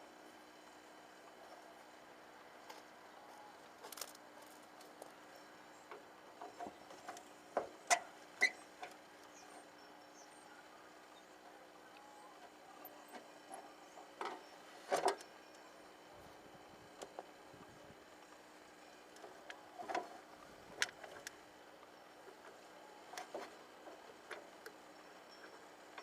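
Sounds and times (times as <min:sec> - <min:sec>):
faint steady hum: 0:00.0 - 0:26.0
clicks and knocks of handling wiring: 0:03.8 - 0:05.1.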